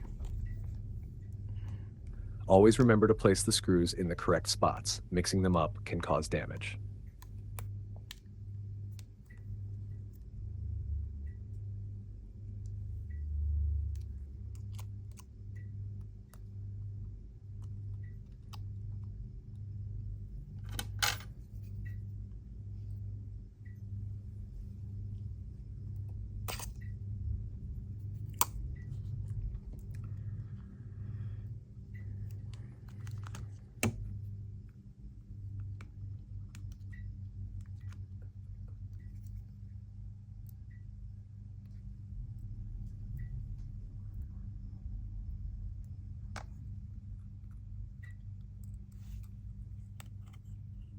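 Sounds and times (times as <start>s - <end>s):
steady low hum: 0.0s - 50.9s
small parts being handled: 26.5s - 26.9s.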